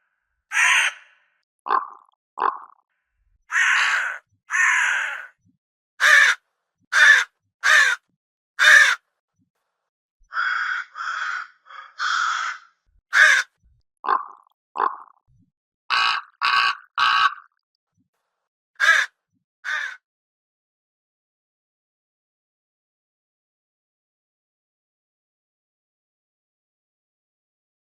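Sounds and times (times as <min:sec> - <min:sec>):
crow cawing: 0:00.5 - 0:02.7, 0:03.5 - 0:05.4, 0:06.0 - 0:08.0, 0:08.6 - 0:09.0, 0:10.3 - 0:15.0, 0:15.9 - 0:17.5, 0:18.8 - 0:20.0.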